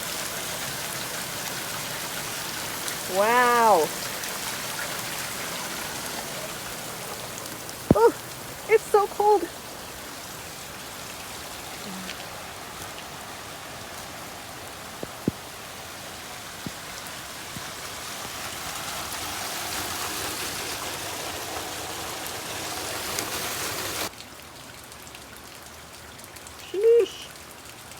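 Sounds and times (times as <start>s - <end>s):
heavy rain falling: 0.0s - 24.1s
sharp raindrop taps: 2.9s - 11.5s, 12.1s - 19.0s.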